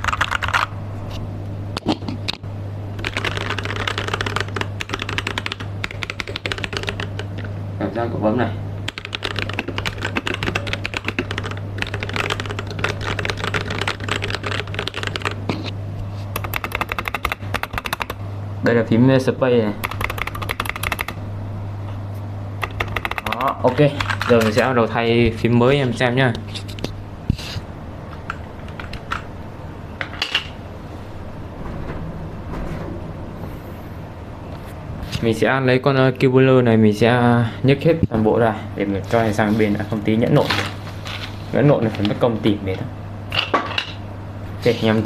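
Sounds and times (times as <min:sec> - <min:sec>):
mechanical keyboard typing: 0:00.0 - 0:00.7, 0:03.0 - 0:07.5, 0:08.9 - 0:15.4, 0:16.4 - 0:18.2, 0:19.8 - 0:21.2, 0:22.6 - 0:24.6
steady low hum: 0:00.0 - 0:45.0
plastic keycaps clicking and clattering: 0:09.0 - 0:15.4, 0:16.4 - 0:18.1, 0:19.8 - 0:21.2.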